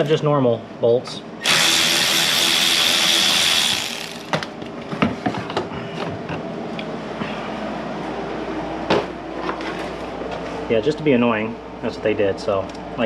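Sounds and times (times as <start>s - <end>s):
power driver whirring: 1.4s - 4.5s.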